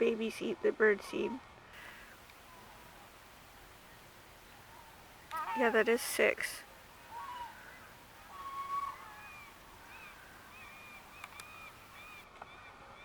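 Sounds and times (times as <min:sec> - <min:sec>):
goose held call: 0:01.8 - 0:12.2
goose high peeps: 0:04.6 - 0:12.2.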